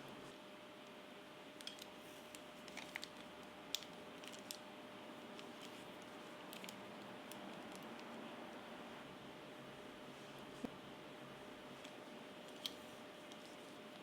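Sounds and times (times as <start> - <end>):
faint steady hum: 0.0 - 14.0
hair handling noise: 5.2 - 8.1, 11.7 - 14.0.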